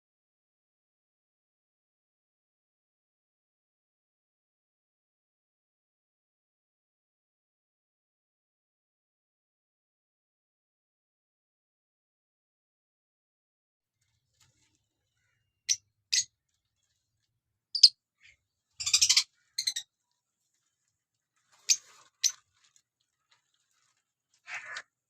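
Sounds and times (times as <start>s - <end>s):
birds chirping high-pitched: 17.8s - 19.9s.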